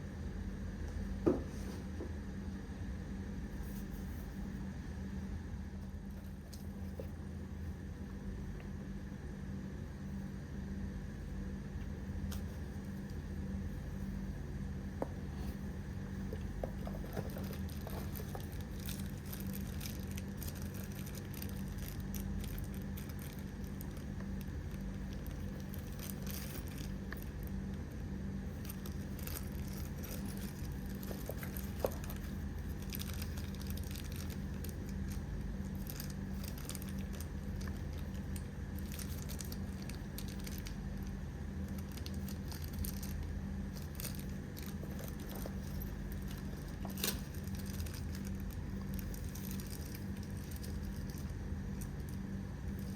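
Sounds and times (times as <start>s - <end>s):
steady low hum: 0.0s - 52.9s
clicks and crinkling of handling: 14.9s - 52.9s.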